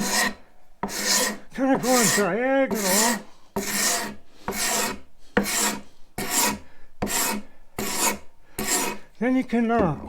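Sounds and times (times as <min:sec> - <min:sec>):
hand scraper on wood: 0:00.0 - 0:09.1.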